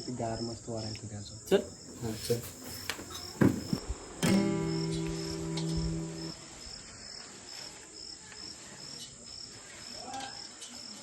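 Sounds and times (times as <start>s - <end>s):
crickets chirping: 0.0s - 11.0s
plucked guitar chord: 4.2s - 6.3s.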